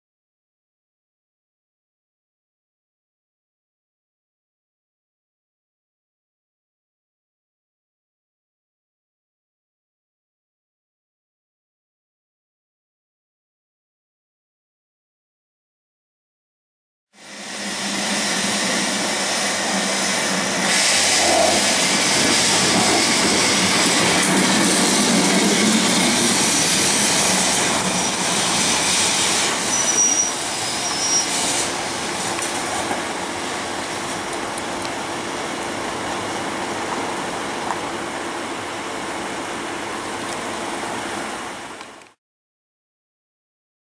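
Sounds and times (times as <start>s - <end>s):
tram motor hum: 17.2s - 42.0s
tram wheels on rails: 17.2s - 42.0s.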